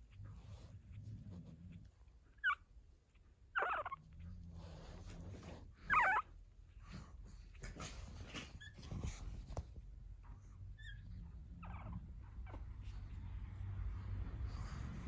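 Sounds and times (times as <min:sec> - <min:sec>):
puppy whimpering: 0:02.4 - 0:02.6, 0:03.5 - 0:04.1, 0:05.8 - 0:06.3, 0:10.7 - 0:12.9.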